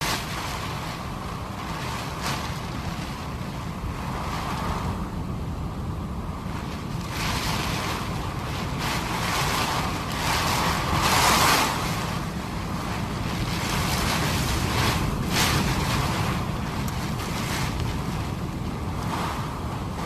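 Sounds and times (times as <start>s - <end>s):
strong wind: 0.0s - 20.0s
wind buffeting microphone: 0.0s - 20.0s
surf breaking: 6.9s - 20.0s.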